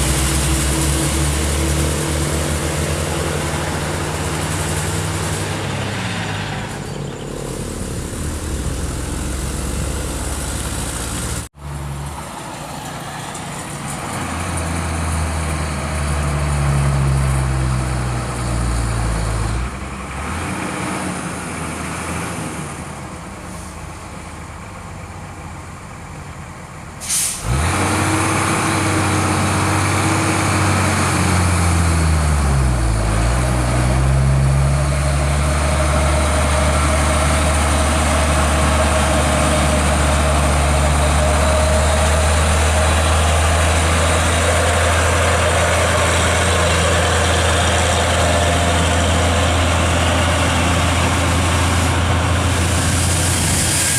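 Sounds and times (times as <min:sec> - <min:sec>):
diesel truck engine running: 0:00.0 - 0:53.9
truck air brake hiss: 0:23.4 - 0:24.2, 0:27.0 - 0:27.6, 0:51.5 - 0:53.9.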